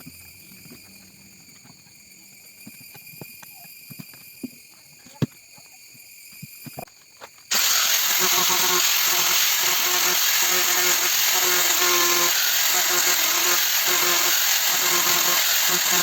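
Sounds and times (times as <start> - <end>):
power drill running: 7.5 - 16.0.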